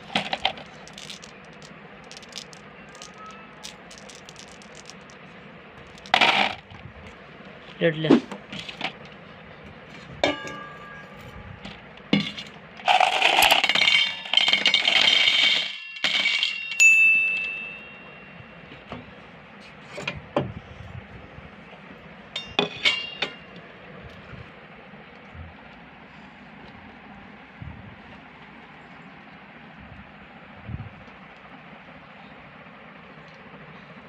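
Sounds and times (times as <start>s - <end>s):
glass marbles clinking and rattling: 0.0s - 5.2s, 5.8s - 6.6s.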